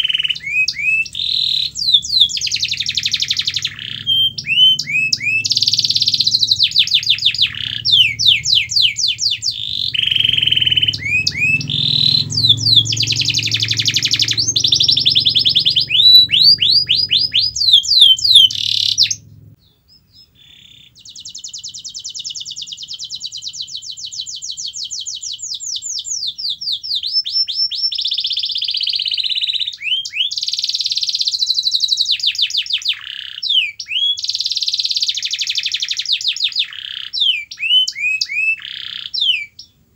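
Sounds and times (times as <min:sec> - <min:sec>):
canary singing trills: 0:00.0 - 0:39.9
low hum: 0:01.0 - 0:19.6.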